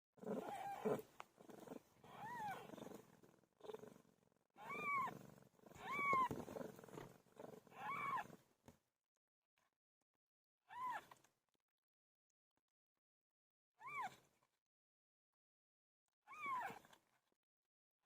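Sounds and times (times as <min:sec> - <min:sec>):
cat meowing: 0:02.1 - 0:02.7, 0:04.6 - 0:05.1, 0:05.8 - 0:06.4, 0:07.7 - 0:08.3.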